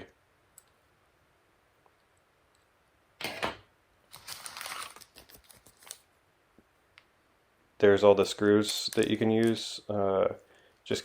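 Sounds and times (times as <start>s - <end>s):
plastic packaging rustling: 4.1s - 6.1s, 8.6s - 9.8s.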